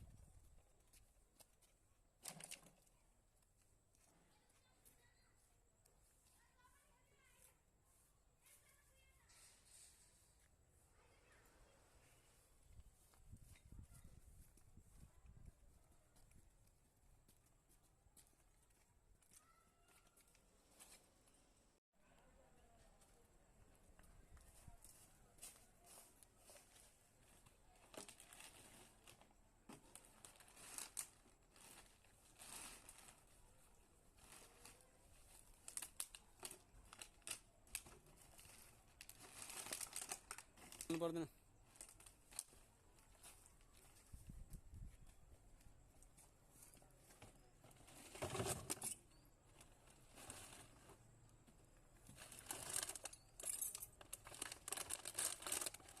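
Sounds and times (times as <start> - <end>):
rustling and crackling handling noise: 23.8 - 56.0.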